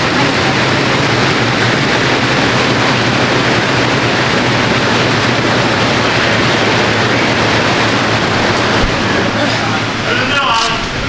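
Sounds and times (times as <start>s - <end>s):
fan rushing air: 0.0s - 11.0s.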